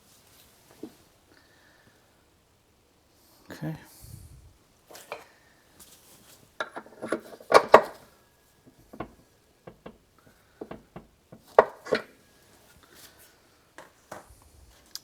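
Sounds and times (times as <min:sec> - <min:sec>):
shock absorber knocking and clattering: 0:06.6 - 0:08.1, 0:08.7 - 0:12.2.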